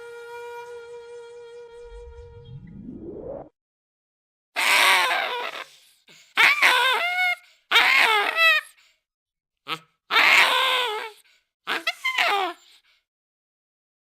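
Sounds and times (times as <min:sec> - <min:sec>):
baboon screaming: 0:04.6 - 0:05.7, 0:06.4 - 0:08.7, 0:09.7 - 0:12.6.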